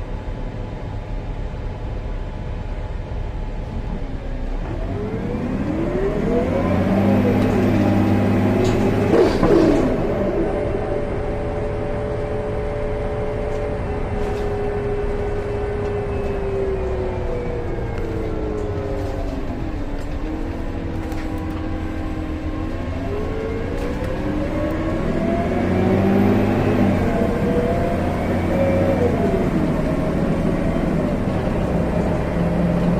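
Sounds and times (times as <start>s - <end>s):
bus engine and drivetrain whine: 0.0s - 32.9s.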